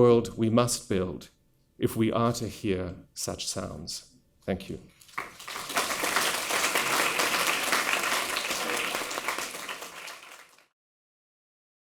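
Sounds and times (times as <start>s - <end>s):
audience applauding: 5.1s - 10.7s.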